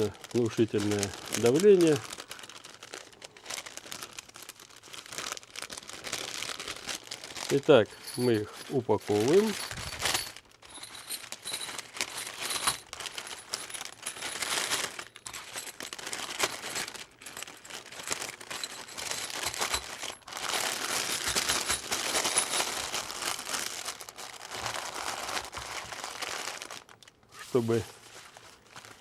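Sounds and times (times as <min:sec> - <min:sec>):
plastic packaging crinkling: 0:00.0 - 0:29.0
light metallic clinks: 0:07.9 - 0:09.7.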